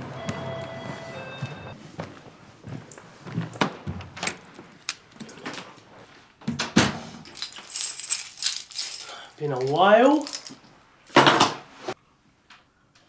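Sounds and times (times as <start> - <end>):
keys jangling: 7.2 - 11.4.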